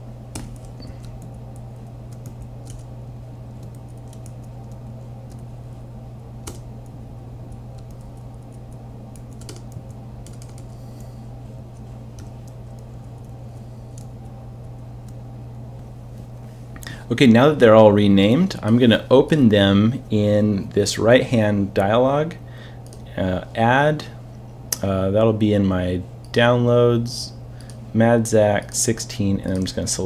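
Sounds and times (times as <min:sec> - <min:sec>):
steady low hum: 0:00.0 - 0:30.0
computer keyboard typing: 0:00.3 - 0:02.9, 0:03.6 - 0:05.5, 0:06.4 - 0:06.9, 0:07.5 - 0:11.1, 0:12.1 - 0:15.2.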